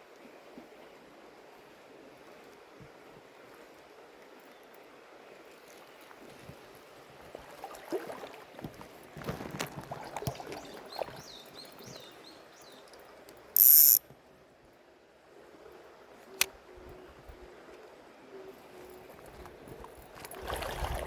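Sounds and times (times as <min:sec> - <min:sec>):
fishing reel clicking and rattling: 0:13.6 - 0:14.0.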